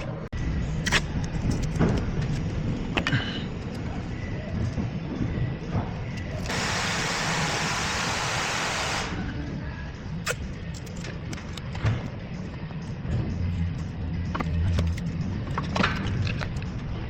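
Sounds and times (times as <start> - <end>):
gas hissing: 6.4 - 9.3.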